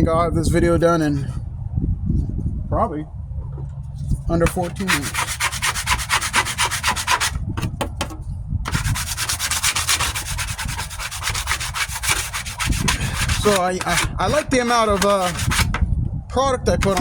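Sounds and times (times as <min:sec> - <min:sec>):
hand sanding scraping strokes: 0:04.4 - 0:15.8, 0:16.8 - 0:17.0.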